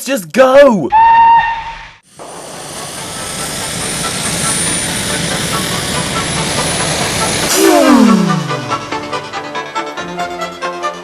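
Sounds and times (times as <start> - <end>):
jet-like rushing noise: 2.0 - 9.2.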